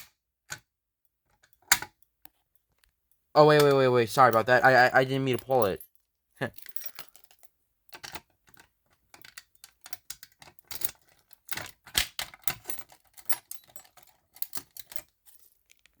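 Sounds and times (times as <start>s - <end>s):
small hard objects clicking and rattling: 9.2s - 16.0s.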